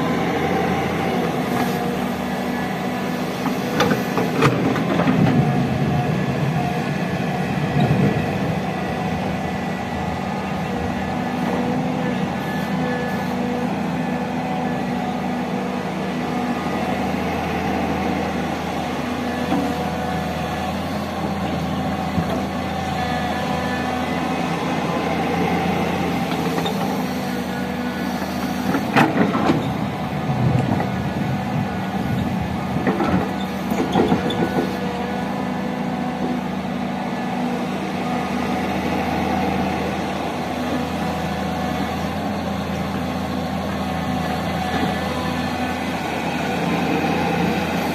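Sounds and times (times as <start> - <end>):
heavy diesel engine running: 0.0 - 47.9.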